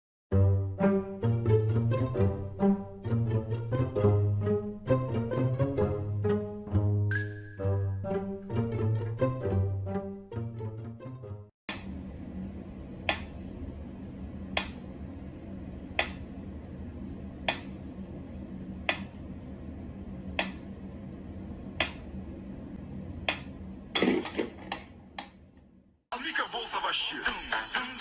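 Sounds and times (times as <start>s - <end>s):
steady low hum: 11.7s - 26.0s.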